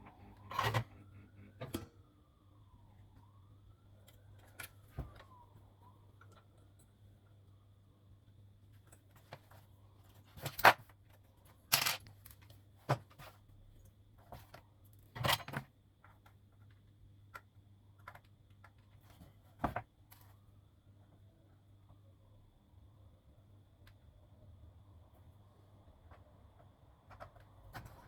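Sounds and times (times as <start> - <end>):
faint low hum: 0.0 - 28.0.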